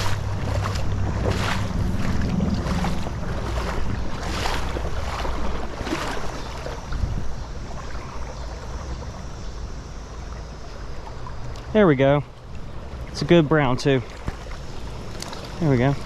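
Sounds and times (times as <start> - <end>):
wind rumbling on microphone: 0.0 - 11.8
river current rushing: 0.0 - 16.0.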